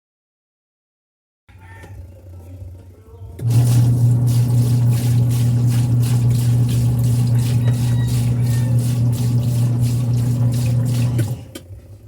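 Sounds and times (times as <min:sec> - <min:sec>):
washing machine motor humming: 0:03.3 - 0:12.0.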